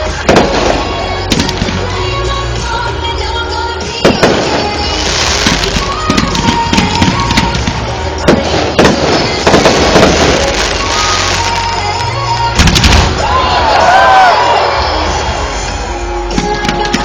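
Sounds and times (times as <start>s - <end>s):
fireworks bangs and crackles: 0.0s - 2.0s, 3.8s - 13.4s
background music: 0.0s - 17.0s.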